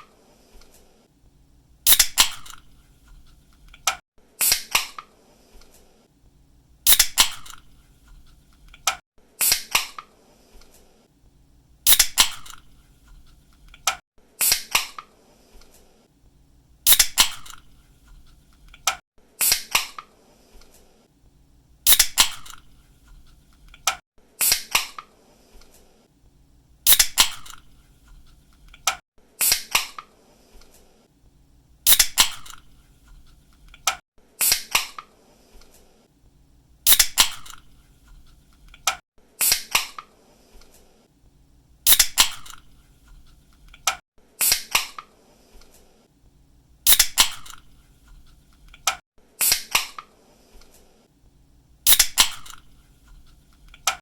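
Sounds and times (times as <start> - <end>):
can pull tab snap and hiss: 1.9 - 4.0, 6.9 - 9.0, 11.9 - 14.0, 16.9 - 17.8, 21.9 - 22.8, 26.9 - 29.0, 31.9 - 34.0, 36.9 - 39.0, 41.9 - 44.0, 46.9 - 49.0, 51.9 - 54.0.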